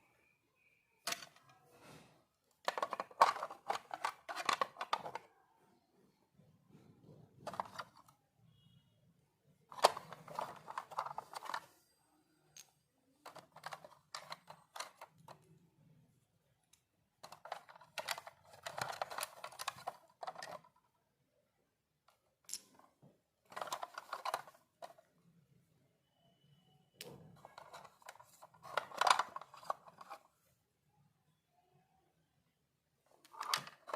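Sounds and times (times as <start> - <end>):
packaging clicking and crinkling: 2.7 - 5.2, 9.8 - 11.6, 17.3 - 20.7, 23.5 - 25.0, 27.4 - 30.2.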